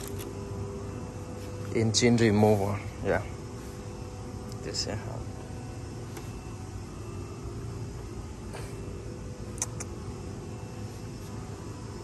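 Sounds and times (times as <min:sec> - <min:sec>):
workshop background hum: 0:00.0 - 0:12.0.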